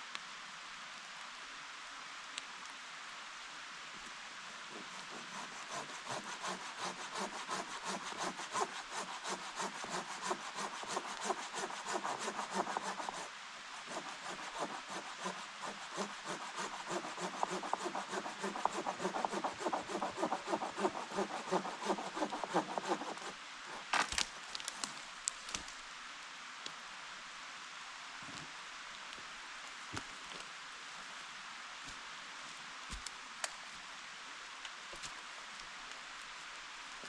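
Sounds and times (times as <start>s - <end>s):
hand saw cutting wood: 4.6s - 24.2s.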